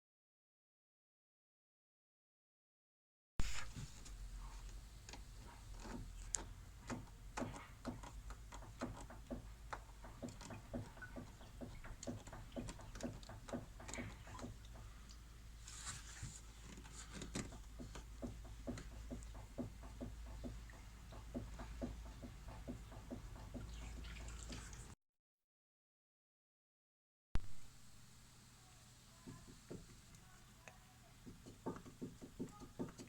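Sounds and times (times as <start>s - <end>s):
car suspension knocking: 6.8s - 14.9s, 17.3s - 24.1s.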